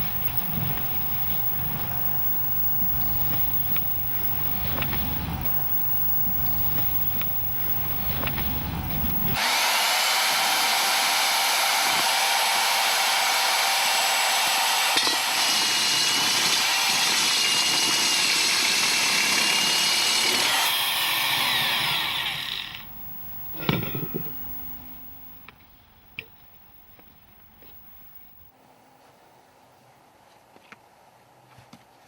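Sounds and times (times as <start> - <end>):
core drill cutting pipe: 0.0 - 28.3.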